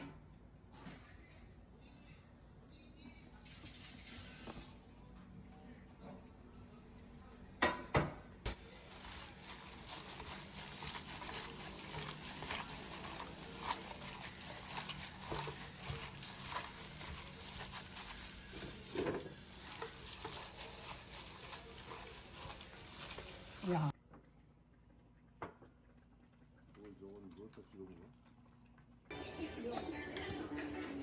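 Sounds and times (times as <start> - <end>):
chewing and slurping: 8.5 - 23.9.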